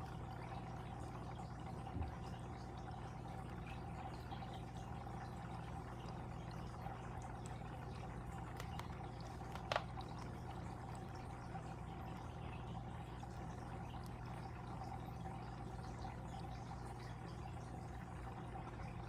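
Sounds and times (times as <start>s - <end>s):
water trickling in fish tank: 0.0s - 19.0s
sharp water drip: 6.0s - 14.7s.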